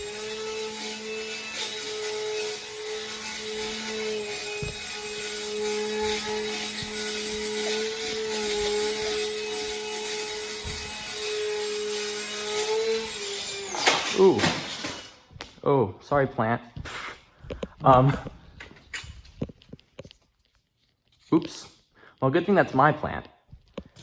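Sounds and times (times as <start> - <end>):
model airplane motor buzzing: 0.0 - 13.9.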